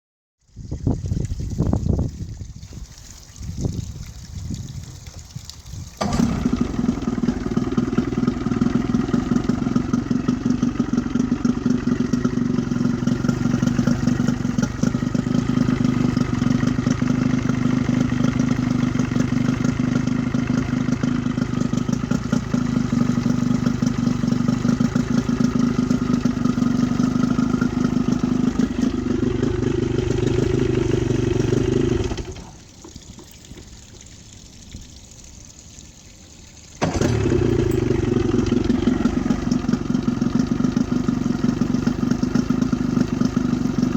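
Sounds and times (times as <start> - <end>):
small engine running unevenly: 6.0 - 32.6, 36.8 - 43.9.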